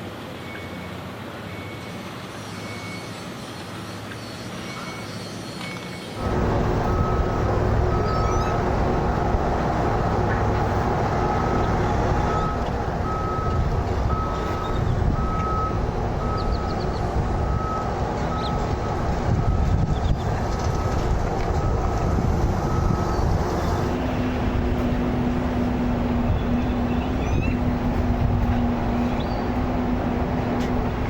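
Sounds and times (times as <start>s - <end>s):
reversing alarm beeping: 0.4s - 3.2s, 4.6s - 23.9s
diesel engine rumble: 6.2s - 31.0s.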